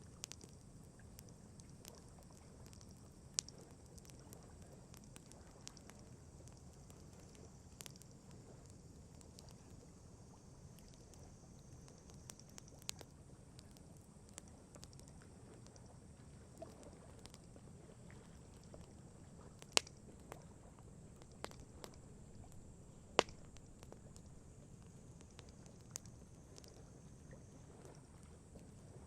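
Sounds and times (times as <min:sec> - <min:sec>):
campfire crackling and popping: 0:00.0 - 0:27.1
low steady rumble: 0:00.0 - 0:29.0.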